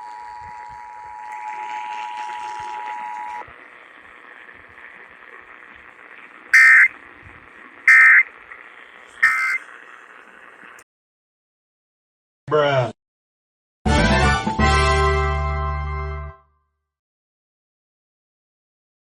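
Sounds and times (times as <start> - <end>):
radio static hiss: 0.0 - 10.8
warbling data bursts: 0.0 - 10.8
two-tone alert signal: 6.6 - 6.9, 7.9 - 8.3, 9.2 - 9.6.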